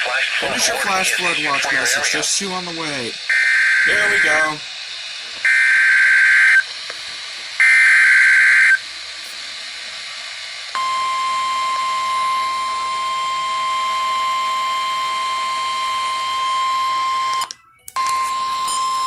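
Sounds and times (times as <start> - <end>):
steady warning alarm tone: 0.4 - 4.6, 5.4 - 6.7, 7.6 - 8.9, 10.7 - 19.0
warbling data screech: 0.4 - 4.6.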